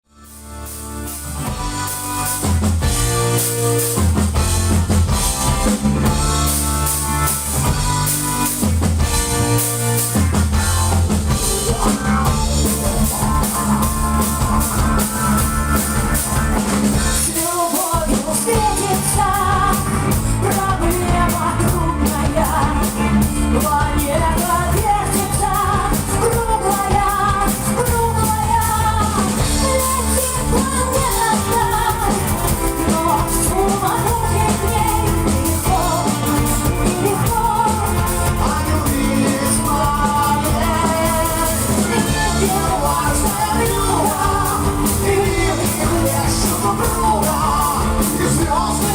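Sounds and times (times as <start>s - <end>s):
rock band playing live: 0.1s - 48.9s
person singing: 11.3s - 48.9s.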